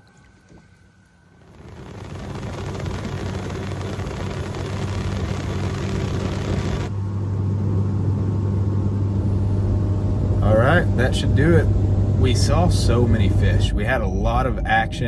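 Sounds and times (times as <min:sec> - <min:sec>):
engine humming: 0:01.2 - 0:15.0.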